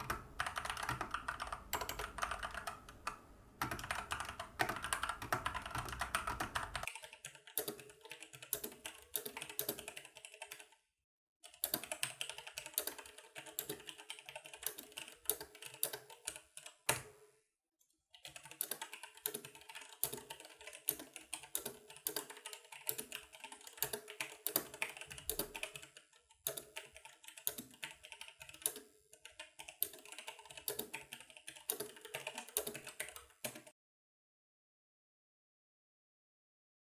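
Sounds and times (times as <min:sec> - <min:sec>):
keyboard typing with low thud: 0:00.0 - 0:10.7, 0:18.2 - 0:33.8
keyboard typing: 0:00.0 - 0:10.8, 0:11.4 - 0:17.2, 0:18.2 - 0:33.8.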